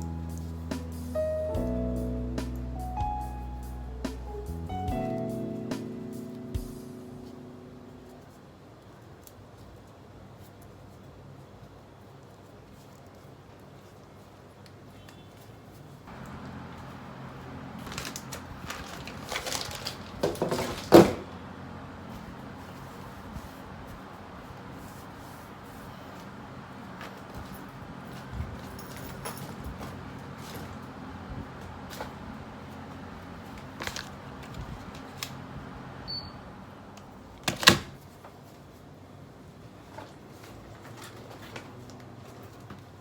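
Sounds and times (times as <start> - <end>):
steady low hum: 0.0 - 8.9, 16.1 - 37.2
rustling: 0.0 - 35.5.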